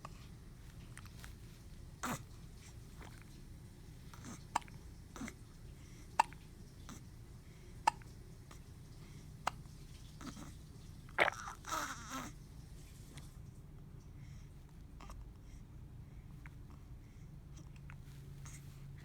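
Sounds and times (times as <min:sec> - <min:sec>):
baby hiccuping: 0:11.2 - 0:12.3.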